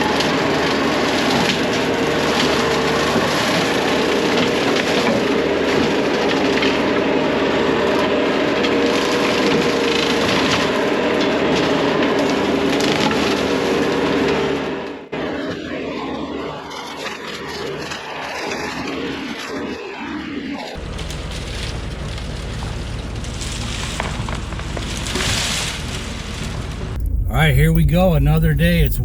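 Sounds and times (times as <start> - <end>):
wood splintering and cracking: 0.0 - 14.8, 20.8 - 27.1
brush cutter machine running: 0.0 - 14.9, 20.8 - 27.1.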